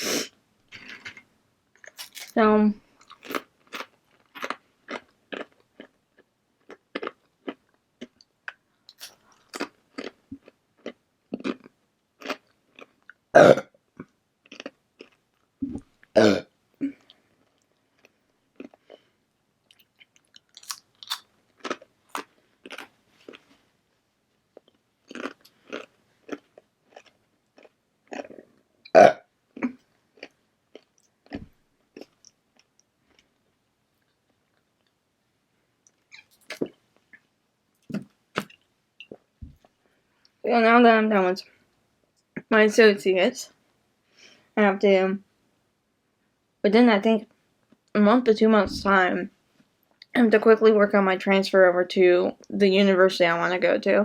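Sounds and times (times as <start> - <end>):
wet chewing and crunching: 1.8 - 2.4, 3.0 - 13.2, 14.4 - 15.5, 17.0 - 23.5, 24.5 - 28.4.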